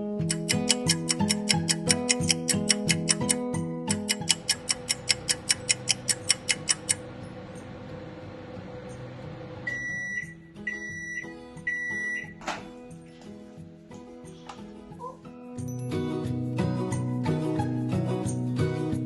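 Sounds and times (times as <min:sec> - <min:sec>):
fast ticking: 0:00.3 - 0:07.0
microwave beeping: 0:00.3 - 0:12.4
microwave oven humming: 0:04.2 - 0:11.2.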